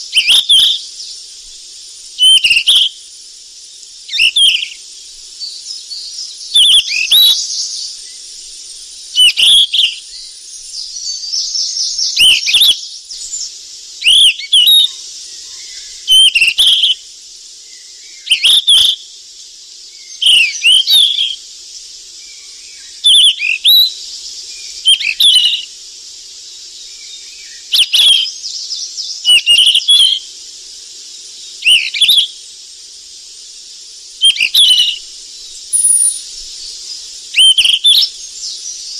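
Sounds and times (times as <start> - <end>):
bird whistled call: 0.0 - 1.2, 2.2 - 3.0, 4.1 - 4.8, 5.4 - 8.2, 9.1 - 17.0, 17.8 - 19.0, 20.0 - 21.4, 22.3 - 25.7, 26.9 - 30.3, 31.6 - 32.4, 34.2 - 36.5, 37.3 - 38.9
steady high hiss: 0.0 - 38.9
bird twittering: 2.2 - 3.0, 24.6 - 25.7, 27.2 - 30.2, 34.2 - 36.4, 37.4 - 38.9.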